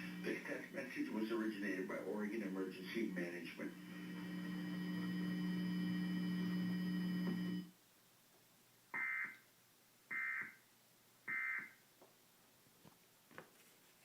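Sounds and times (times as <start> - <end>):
electrical buzz with high whine: 0.0 - 7.7
data squawk bursts: 9.0 - 9.4, 10.1 - 10.6, 11.3 - 11.8.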